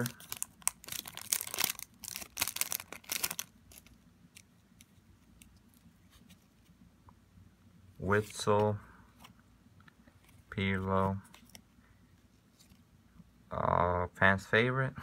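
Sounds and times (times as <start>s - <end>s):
wrapper tearing and crinkling: 0.0s - 4.0s.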